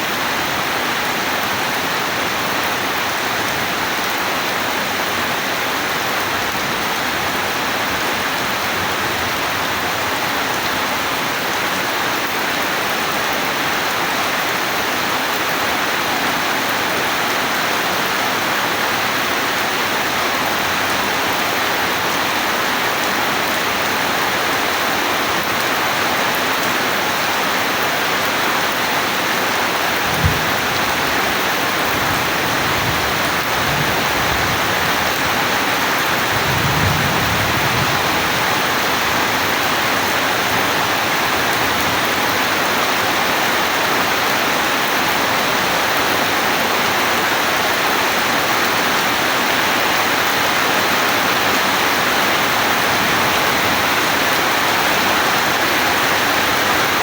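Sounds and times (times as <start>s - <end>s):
heavy rain falling: 0.0s - 57.0s
low thud: 30.0s - 31.0s.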